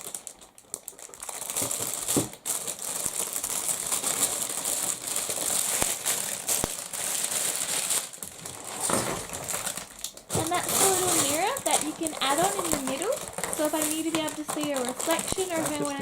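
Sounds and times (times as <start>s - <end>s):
packaging crinkling and rustling: 0.0s - 16.0s.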